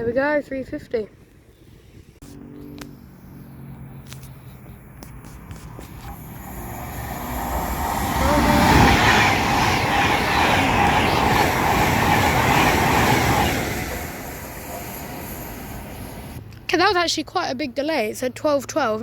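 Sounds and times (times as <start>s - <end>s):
train passing at speed: 4.8s - 16.6s.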